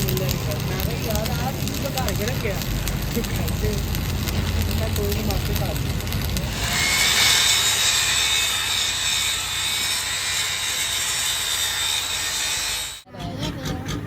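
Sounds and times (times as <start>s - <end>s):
power tool grinding metal: 5.8s - 13.9s.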